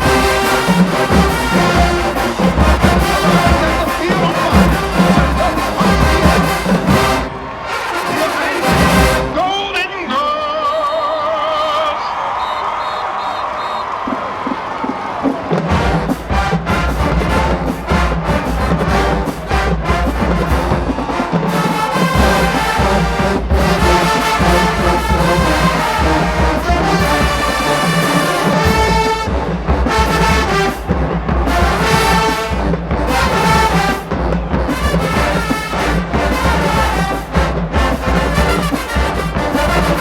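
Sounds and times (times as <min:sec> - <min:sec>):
marching band playing: 0:00.0 - 0:10.4, 0:13.7 - 0:40.0.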